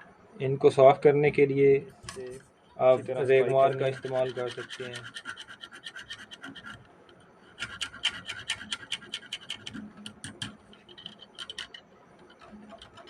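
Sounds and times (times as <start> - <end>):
sandpaper rasping on metal: 3.1 - 6.8, 7.6 - 9.8, 12.4 - 13.0.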